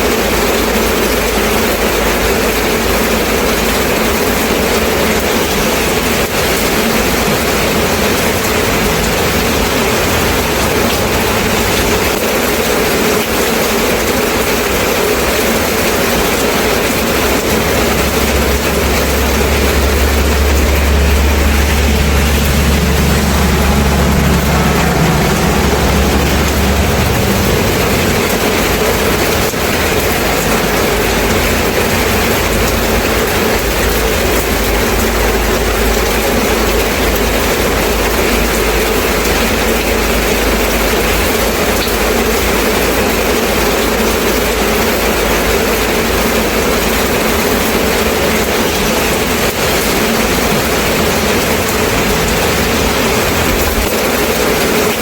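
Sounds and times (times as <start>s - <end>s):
rain falling: 0.0s - 55.0s
low rumble: 5.0s - 39.3s.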